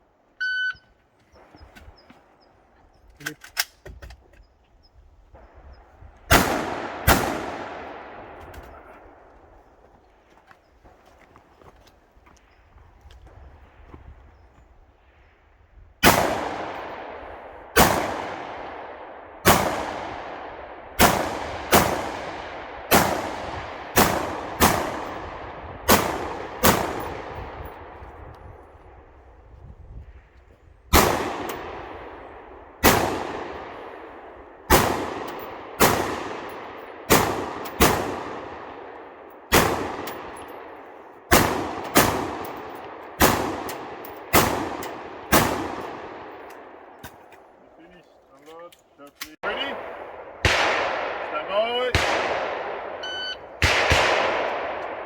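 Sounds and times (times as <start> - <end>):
rifle shots echoing: 6.3 - 9.6, 16.0 - 28.7, 30.9 - 47.7, 49.4 - 55.0.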